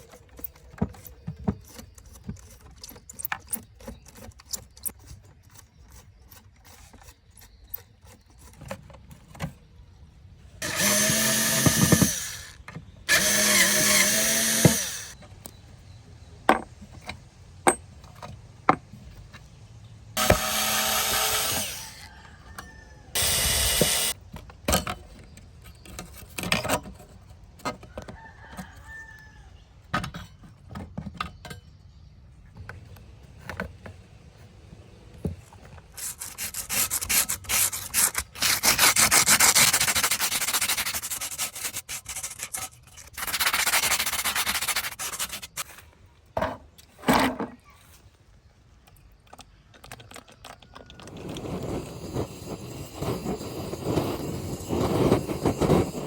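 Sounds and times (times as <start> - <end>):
fast rubbing strokes: 36.0 - 45.8.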